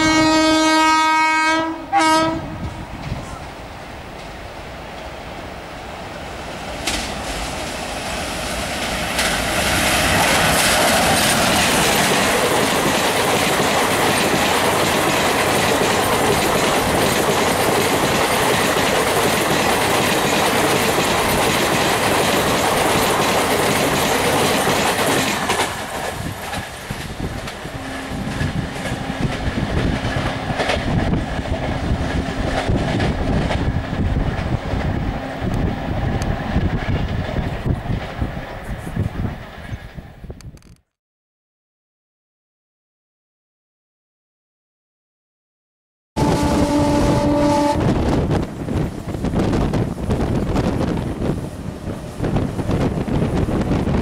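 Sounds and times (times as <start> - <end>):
train wheels clattering over rail joints: 8.7 - 34.9.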